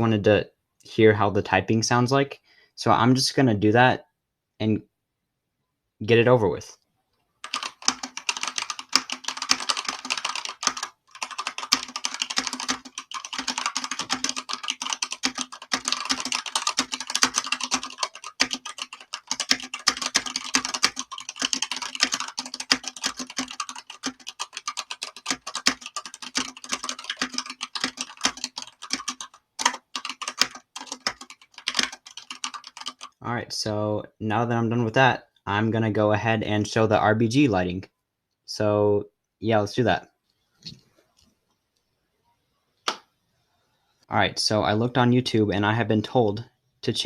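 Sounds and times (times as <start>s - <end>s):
mechanical keyboard typing: 7.4s - 33.2s.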